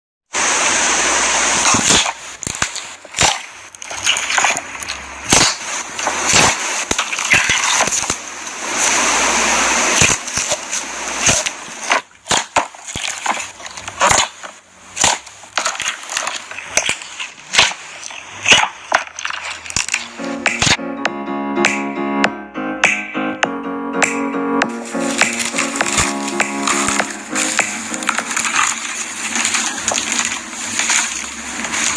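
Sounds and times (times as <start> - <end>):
slime squelching and popping: 1.6 - 8.2, 11.2 - 20.8, 25.1 - 31.9.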